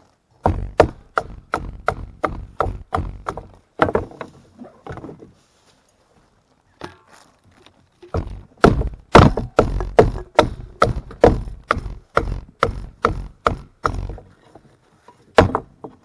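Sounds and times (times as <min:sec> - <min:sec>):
wood being chopped: 0:00.4 - 0:05.2, 0:08.1 - 0:14.3, 0:15.3 - 0:16.0.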